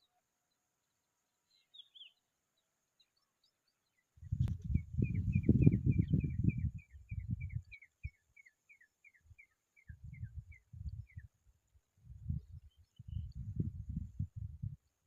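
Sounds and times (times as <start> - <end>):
small bird chirping: 1.5 - 11.3, 12.3 - 14.0
low muffled rumbling: 4.2 - 7.6.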